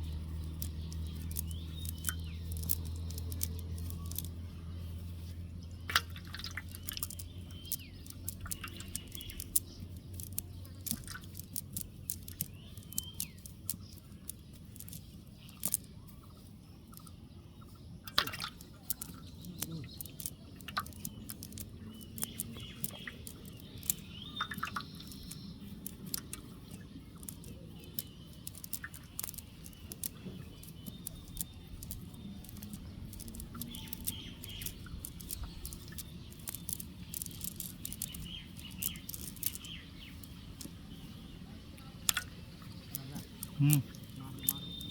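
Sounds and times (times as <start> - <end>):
birds chirping: 0.0 - 44.9
small taps and clicks: 0.0 - 44.9
water dripping: 0.0 - 44.9.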